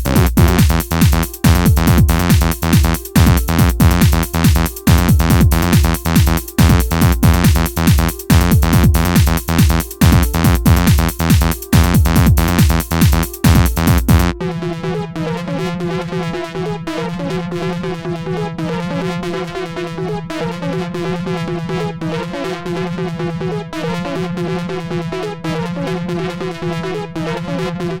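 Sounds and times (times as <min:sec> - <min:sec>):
electronic music: 0:00.0 - 0:28.0.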